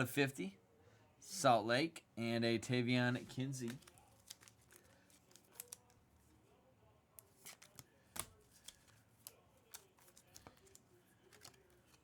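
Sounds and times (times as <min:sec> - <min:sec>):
trading cards clicking and sliding: 0:03.1 - 0:06.0, 0:07.2 - 0:12.0.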